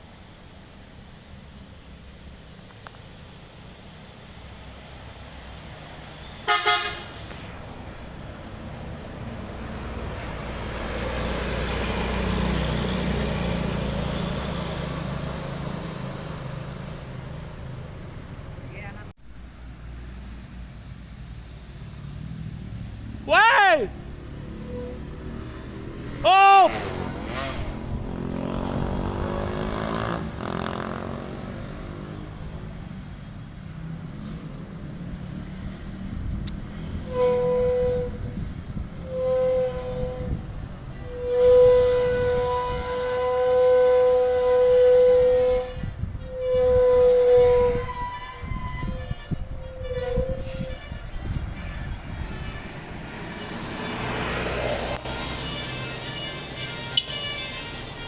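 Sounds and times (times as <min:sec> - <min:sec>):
tour bus driving past: 0:00.0 - 0:45.3, 0:51.0 - 0:58.0
musical bus horn: 0:06.4 - 0:07.4, 0:23.3 - 0:29.4, 0:36.8 - 0:58.0.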